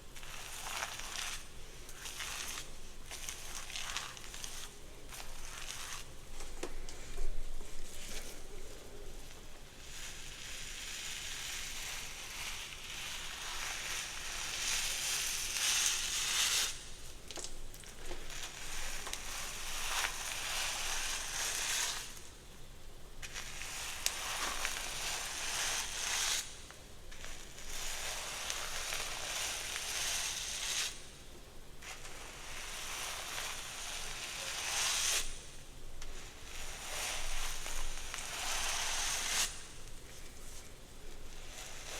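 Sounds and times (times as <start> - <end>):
hair rustling and crackling: 0.0 - 10.2, 36.0 - 41.9.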